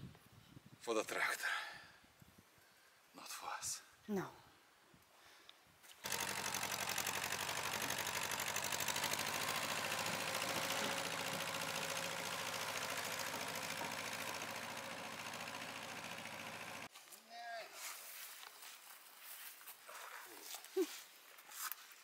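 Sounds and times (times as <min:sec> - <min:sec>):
tractor engine running: 0:06.0 - 0:16.9.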